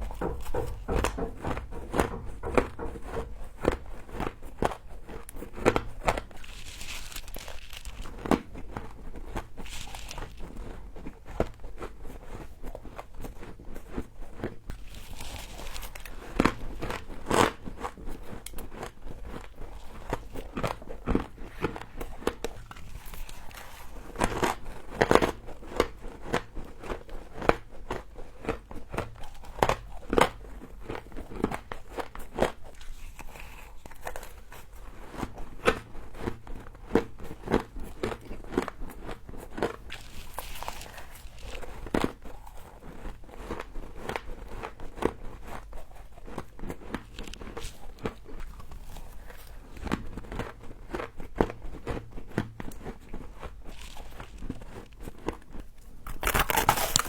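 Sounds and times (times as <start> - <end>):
soft crumbling rustles: 0.0 - 51.0, 51.6 - 57.0
frost crunching while chewed: 0.0 - 57.0.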